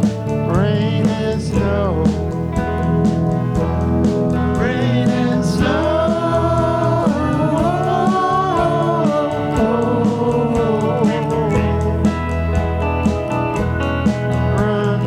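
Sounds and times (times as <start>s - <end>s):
country band playing live: 0.0s - 15.0s
drums steady beat: 0.0s - 15.0s
sliding lead melody: 0.0s - 15.0s.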